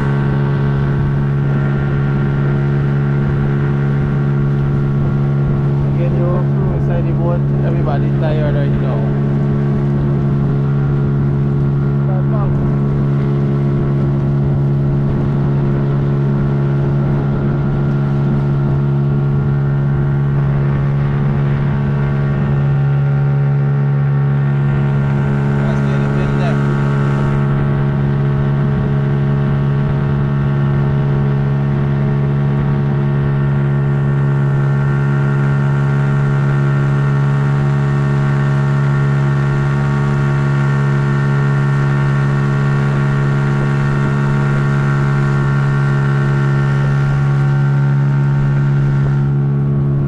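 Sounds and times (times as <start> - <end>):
outboard motor droning: 0.0 - 50.0.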